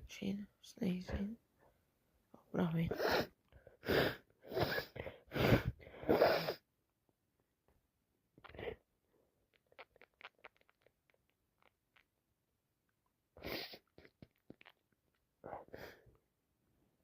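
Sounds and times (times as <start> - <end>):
wet nose and mouth clicks: 9.5 - 12.1, 13.4 - 15.2.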